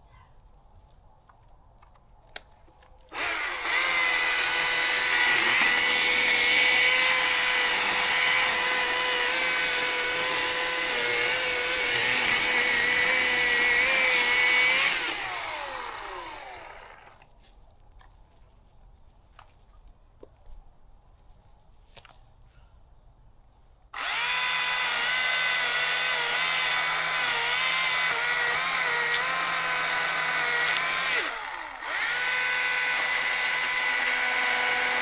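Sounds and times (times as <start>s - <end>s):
chainsaw running: 3.1s - 17.2s, 24.0s - 35.0s.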